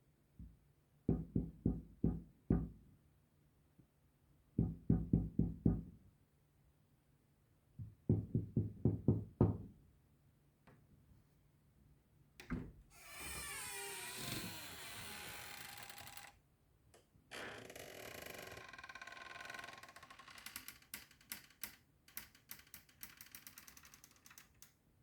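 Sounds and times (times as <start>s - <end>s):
knocking on a door: 1.1s - 2.8s, 4.6s - 5.9s, 7.8s - 9.8s.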